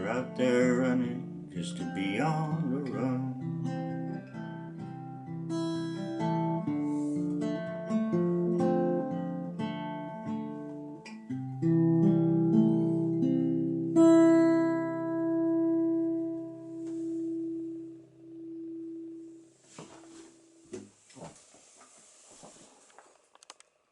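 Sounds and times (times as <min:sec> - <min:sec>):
acoustic guitar playing: 0:00.0 - 0:20.8.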